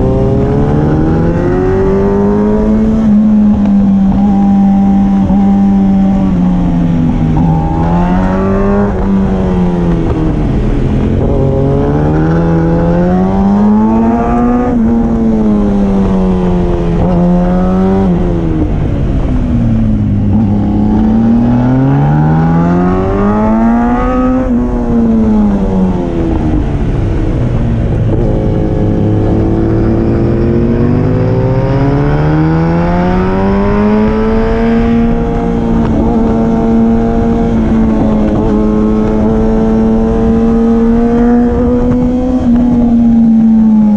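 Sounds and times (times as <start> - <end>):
motorcycle engine revving: 0.0 - 43.9
wind rush: 0.0 - 43.9.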